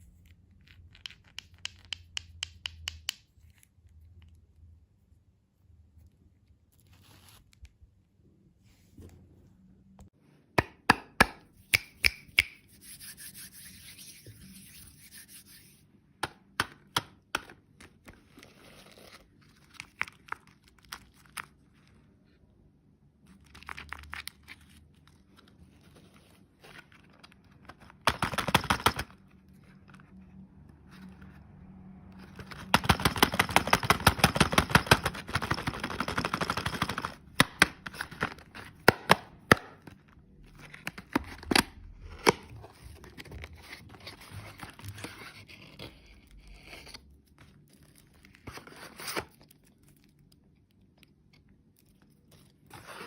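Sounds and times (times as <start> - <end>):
sharp clicks and taps: 0.9 - 3.3, 10.6 - 12.8.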